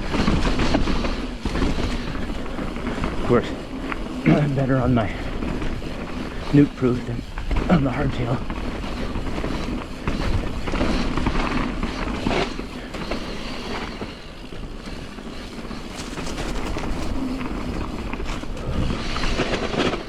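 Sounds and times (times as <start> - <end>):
bike chain and frame rattling: 0.0 - 20.0
tyres rumbling on dirt: 0.0 - 20.0
wind on microphone: 8.5 - 20.0.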